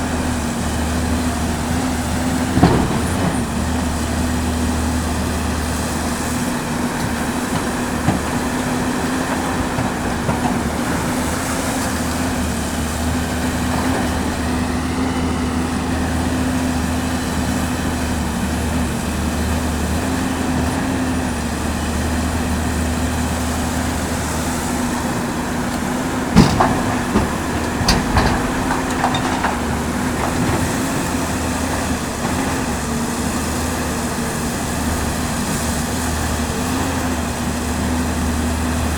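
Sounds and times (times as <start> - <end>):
excavator diesel engine running: 0.0 - 38.9
sharp knocks and clanks: 2.4 - 3.9, 25.7 - 32.6.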